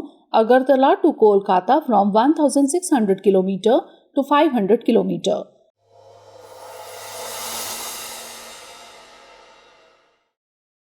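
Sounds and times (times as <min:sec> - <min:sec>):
cymbal wash: 0:05.8 - 0:10.2.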